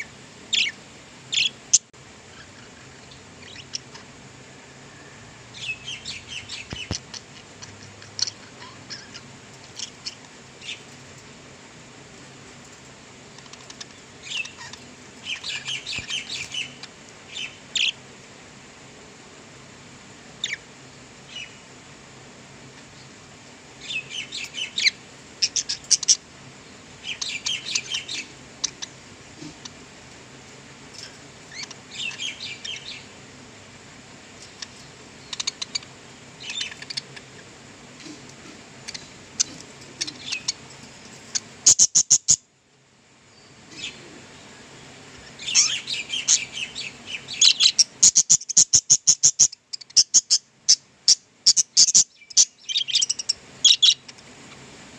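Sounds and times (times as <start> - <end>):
budgerigars chirping: 0.5 - 1.8, 2.4 - 4.1, 5.6 - 10.8, 13.5 - 18.0, 23.8 - 26.2, 27.0 - 29.8, 31.5 - 33.1, 34.6 - 37.5, 38.8 - 40.6, 41.3 - 42.4, 45.3 - 54.2.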